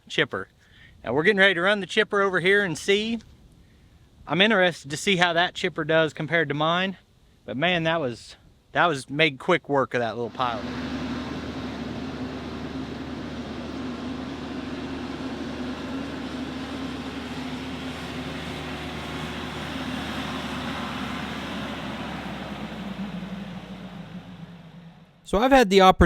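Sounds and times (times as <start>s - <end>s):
tractor engine running: 10.3s - 25.2s.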